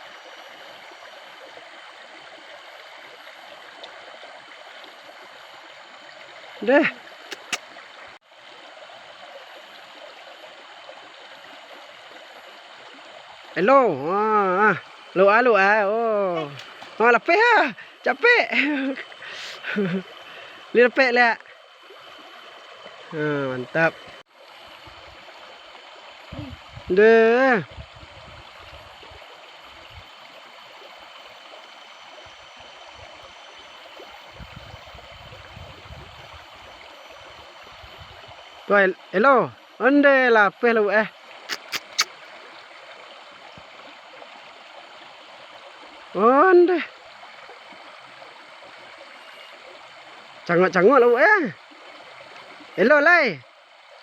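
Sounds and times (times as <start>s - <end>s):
flowing water: 0.0s - 54.0s
short clicks: 7.3s - 7.7s.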